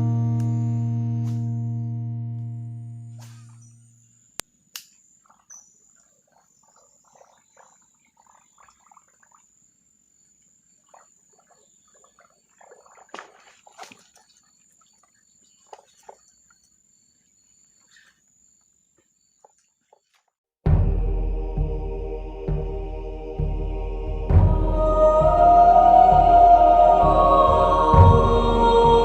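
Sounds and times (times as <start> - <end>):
music: 0.0 - 3.5, 20.7 - 29.0.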